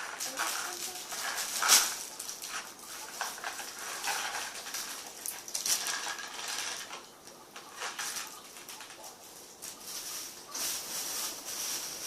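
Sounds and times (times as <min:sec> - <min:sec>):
packaging rustling: 0:00.0 - 0:12.0.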